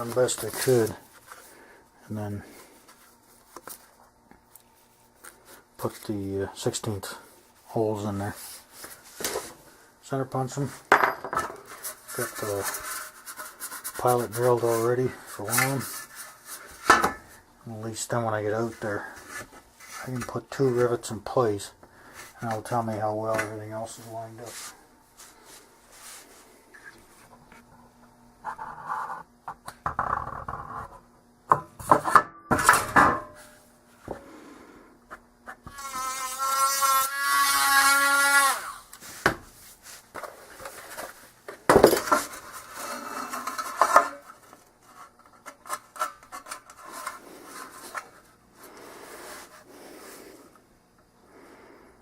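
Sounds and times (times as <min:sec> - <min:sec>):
power tool motor whining: 0:35.7 - 0:38.8.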